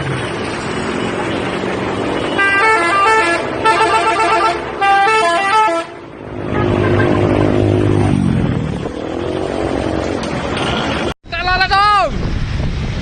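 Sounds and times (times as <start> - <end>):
bus musical horn: 2.3 - 7.2.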